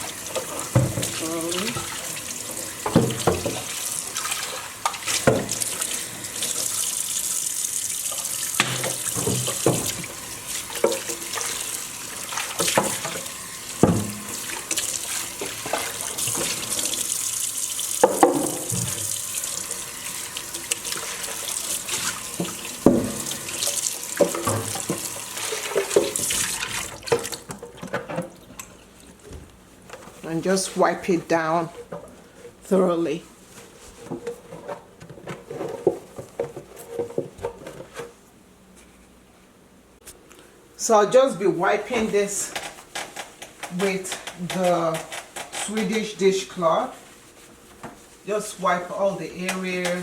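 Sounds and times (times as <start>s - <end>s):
tap running into sink: 0.1s - 7.4s, 8.0s - 28.7s.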